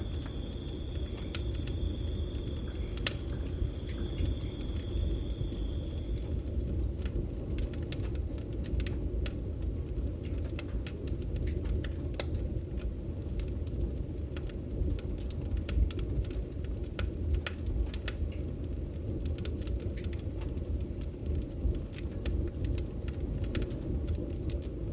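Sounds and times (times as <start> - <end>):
campfire crackling: 0.0 - 9.0.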